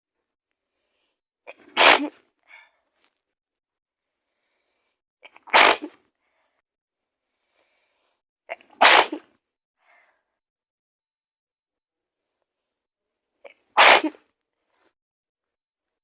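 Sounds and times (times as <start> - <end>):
woman sneezing: 1.5 - 2.2, 5.3 - 6.0, 8.6 - 9.3, 13.8 - 14.2.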